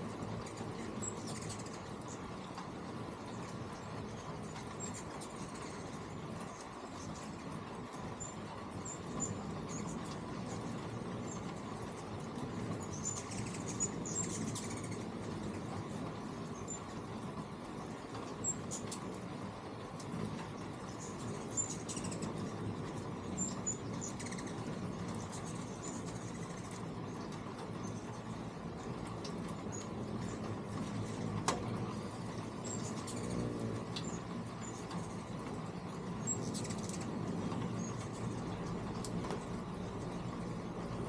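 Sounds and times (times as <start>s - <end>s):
hummingbirds chirping: 0.0s - 41.0s
steady low hum: 0.0s - 41.0s.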